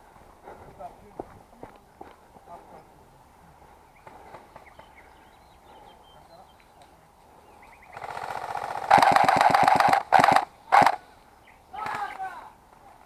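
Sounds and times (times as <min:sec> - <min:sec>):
airsoft gun firing full auto: 0:08.0 - 0:11.0, 0:11.8 - 0:12.2.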